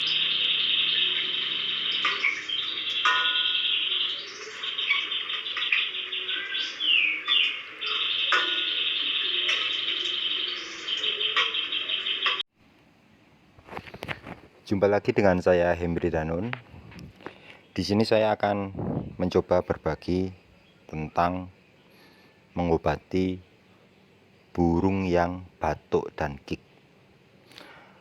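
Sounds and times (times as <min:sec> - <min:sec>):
songbird trilling and chirping: 0:00.0 - 0:12.4.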